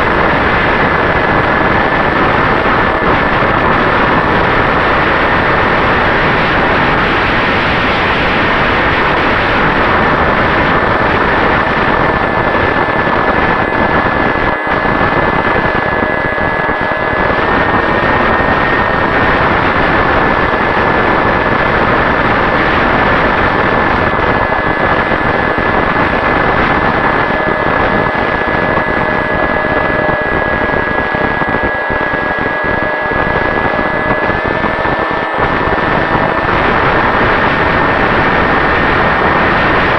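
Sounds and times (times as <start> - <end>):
electric motor whine: 0.0 - 39.9
wind noise on microphone: 0.0 - 39.9.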